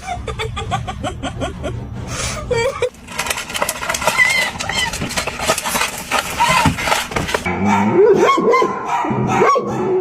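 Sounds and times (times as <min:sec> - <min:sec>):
clattering noise: 0:02.8 - 0:07.5.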